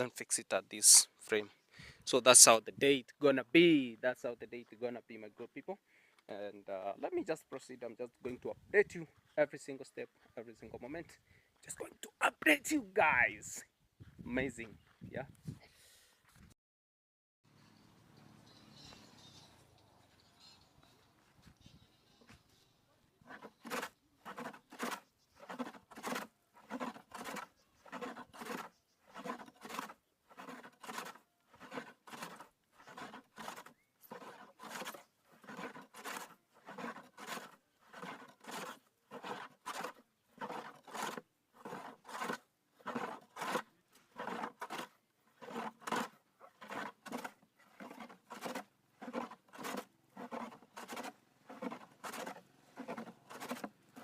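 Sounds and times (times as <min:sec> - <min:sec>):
hand tool scraping wood: 0:21.4 - 0:54.0.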